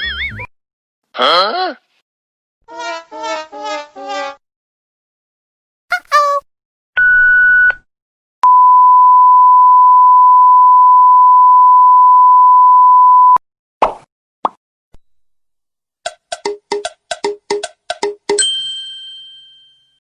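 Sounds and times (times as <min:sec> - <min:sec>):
censor bleep: 0:08.4 - 0:13.4.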